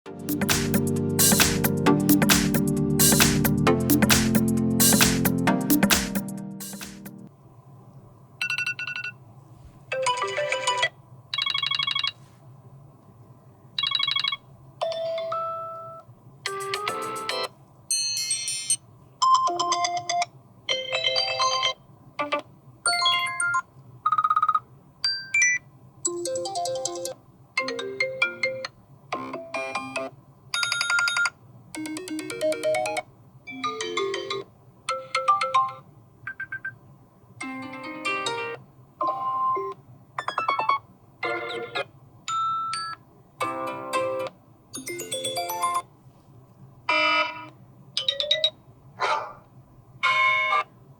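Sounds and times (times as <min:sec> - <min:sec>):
phone alarm tones: 0:10.0 - 0:12.2, 0:13.8 - 0:16.0, 0:50.0 - 0:50.7.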